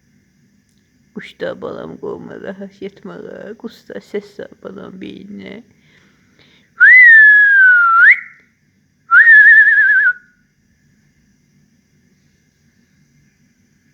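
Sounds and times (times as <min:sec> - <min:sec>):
person whistling: 0:06.8 - 0:08.4, 0:09.1 - 0:10.2.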